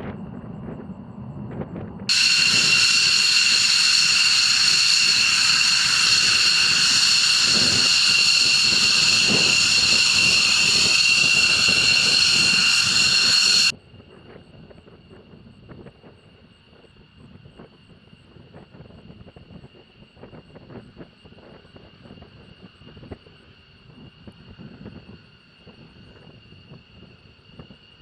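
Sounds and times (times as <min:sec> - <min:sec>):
jet engines whining: 0:02.1 - 0:13.7.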